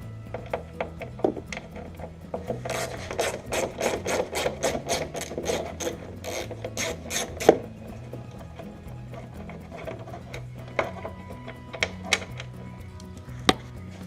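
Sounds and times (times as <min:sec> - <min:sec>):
ratcheting screwdriver clicking: 0:02.5 - 0:07.7.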